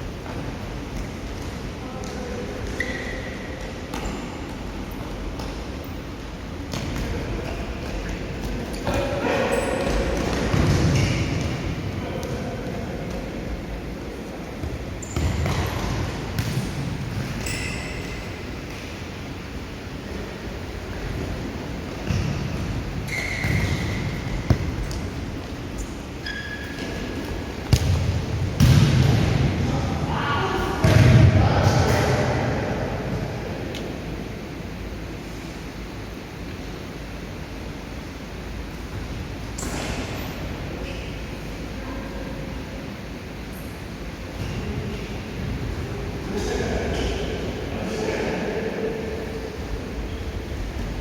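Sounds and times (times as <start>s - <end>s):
shoe squeaks: 2.7s - 4.4s, 15.0s - 15.7s, 17.3s - 18.4s, 23.0s - 24.5s, 25.8s - 27.2s
ball kicks and bounces: 9.8s - 11.7s, 14.6s - 17.9s, 22.0s - 25.1s, 26.3s - 29.5s
short high squeaks: 23.1s - 24.0s, 26.2s - 27.0s
ball struck and thudding: 27.6s - 29.5s.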